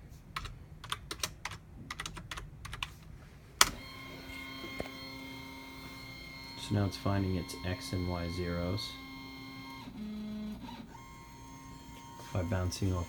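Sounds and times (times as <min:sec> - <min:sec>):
keyboard typing: 0:00.4 - 0:03.0
stepper motors whining: 0:03.7 - 0:13.0.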